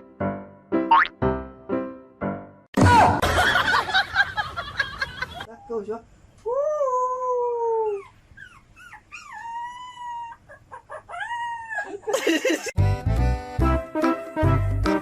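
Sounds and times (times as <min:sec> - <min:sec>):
dog yelping: 0:07.9 - 0:12.1.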